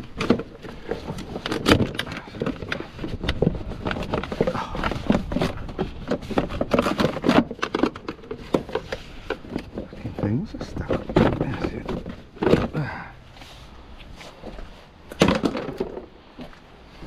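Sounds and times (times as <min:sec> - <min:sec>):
hand tools clattering on metal: 0:03.8 - 0:13.1.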